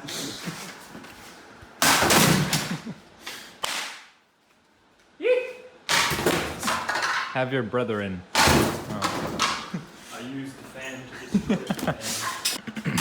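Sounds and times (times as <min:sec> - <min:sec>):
objects hitting ceiling fan: 0:00.5 - 0:02.9, 0:05.9 - 0:07.4, 0:08.4 - 0:09.9.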